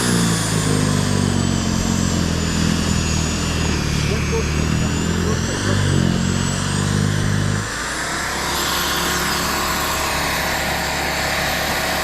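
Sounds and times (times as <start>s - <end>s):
snow blower motor hum: 0.0s - 12.0s.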